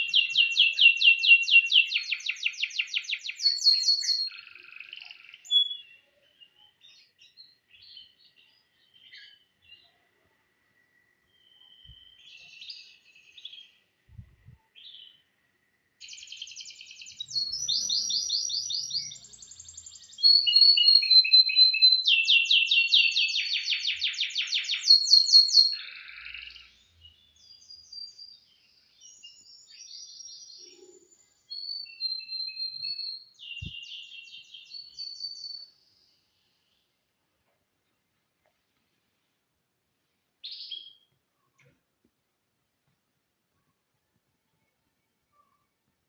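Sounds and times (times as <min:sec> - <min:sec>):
canary singing trills: 0:00.0 - 0:10.2, 0:16.0 - 0:36.8, 0:40.4 - 0:41.1.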